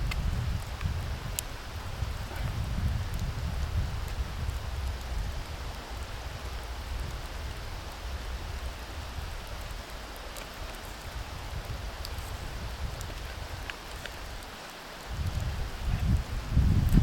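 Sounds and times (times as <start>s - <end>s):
mountain stream rushing: 0.0s - 17.0s
faint ticks: 9.4s - 16.2s.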